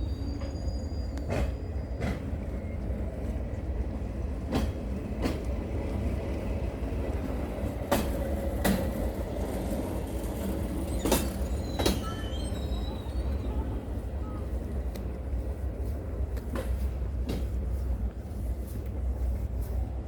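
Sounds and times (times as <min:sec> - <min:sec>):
rail bike rumbling on track: 0:00.0 - 0:20.0
wheels clacking on rail joints: 0:00.2 - 0:20.0.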